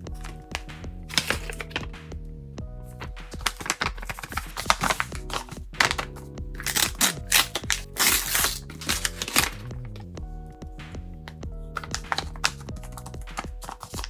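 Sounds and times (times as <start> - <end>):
background music: 0.0 - 14.0
paper crinkling and rustling: 1.1 - 2.0, 2.9 - 10.0, 11.8 - 14.0.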